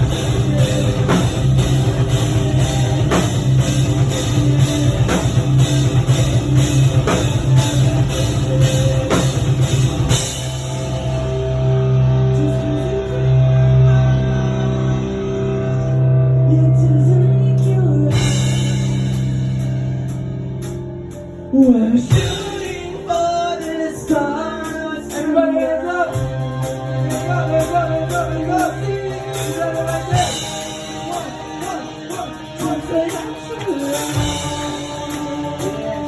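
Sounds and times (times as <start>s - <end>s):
hard rock band playing: 0.0s - 36.0s
person singing: 12.0s - 19.1s, 21.5s - 36.0s.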